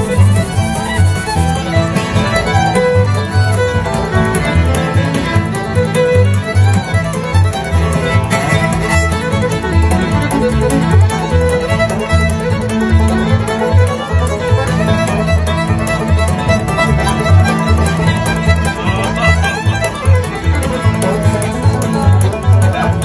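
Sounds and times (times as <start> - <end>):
steady low beat: 0.0 - 3.0
fiddle-led instrumental music: 0.0 - 23.0.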